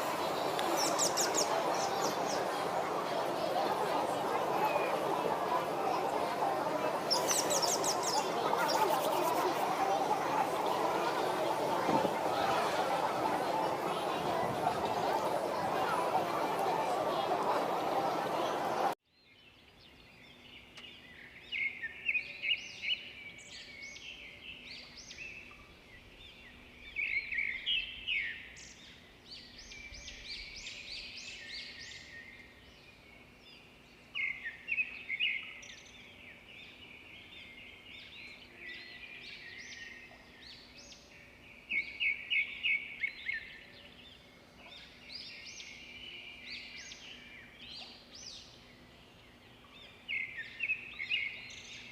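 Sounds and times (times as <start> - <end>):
birds chirping: 0.0 - 19.0.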